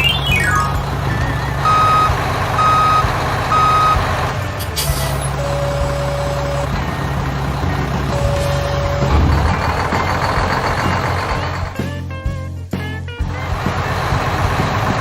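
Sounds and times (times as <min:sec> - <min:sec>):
reversing alarm beeps: 0:00.0 - 0:04.1, 0:04.9 - 0:11.2
long low tone: 0:00.0 - 0:11.8
heavy truck engine running: 0:00.0 - 0:15.0
air brake hiss: 0:04.6 - 0:05.3.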